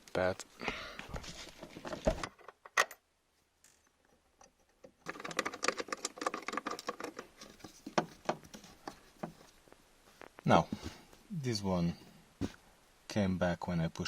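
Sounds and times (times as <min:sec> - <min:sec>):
rapid scratching and small clicks: 0:04.4 - 0:09.1.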